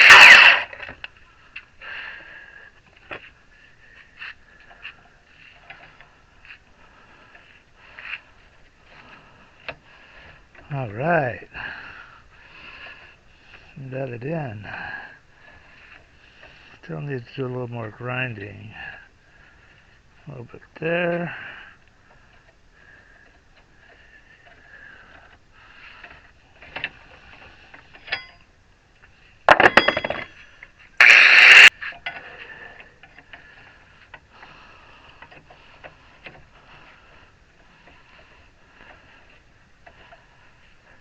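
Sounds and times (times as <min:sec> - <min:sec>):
short harsh burst of noise: 0:00.0 - 0:00.8, 0:31.0 - 0:31.7
loud ringing metal clank: 0:29.5 - 0:30.4
light metal clinks and knocks: 0:29.5 - 0:30.7.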